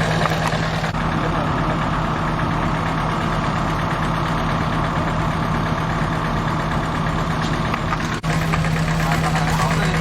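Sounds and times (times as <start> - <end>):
large engine idling: 0.0 - 10.0.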